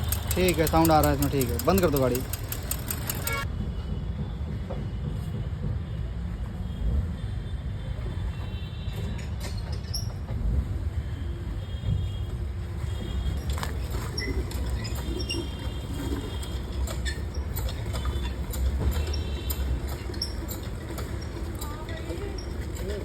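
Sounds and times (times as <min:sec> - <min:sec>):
sharp engine ticks: 0:00.0 - 0:03.5.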